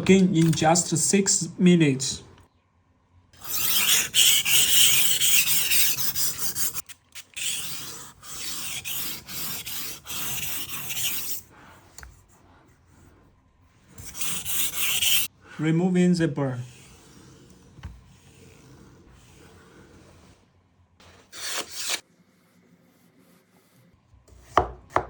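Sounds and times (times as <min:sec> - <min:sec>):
knife rasping on sharpening stone: 0:03.4 - 0:11.4, 0:14.0 - 0:15.3.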